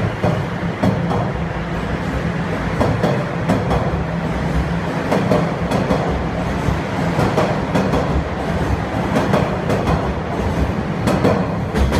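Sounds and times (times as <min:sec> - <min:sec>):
subway train rumbling: 0:00.0 - 0:11.9
wheels clacking over rail joints: 0:02.7 - 0:11.9.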